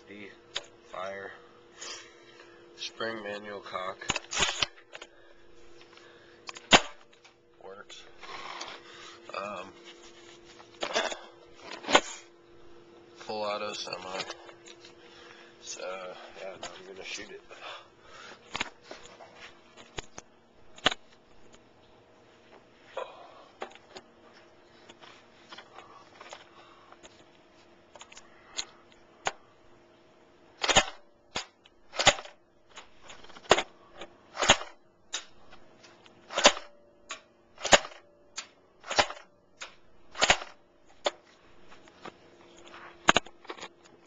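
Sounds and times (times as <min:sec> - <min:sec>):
airsoft rifle shots: 0:04.0 - 0:04.8, 0:06.6 - 0:07.0, 0:30.6 - 0:32.4, 0:34.4 - 0:35.3, 0:36.3 - 0:36.8, 0:37.6 - 0:38.1, 0:38.8 - 0:39.3, 0:40.1 - 0:40.6.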